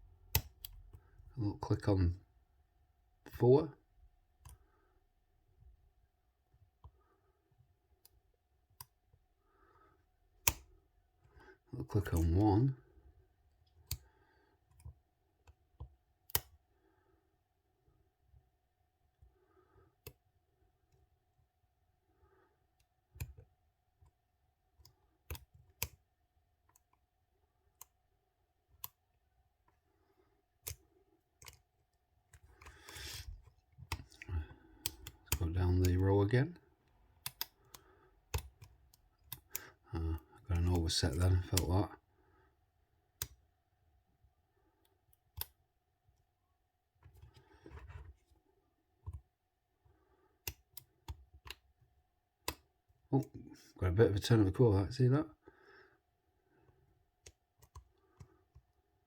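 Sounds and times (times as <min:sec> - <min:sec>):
lock pick clicks: 0:10.4 - 0:10.7.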